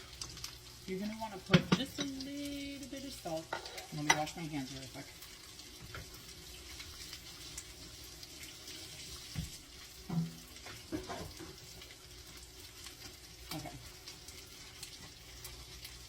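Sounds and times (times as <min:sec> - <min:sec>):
tap water running: 0:00.0 - 0:16.0.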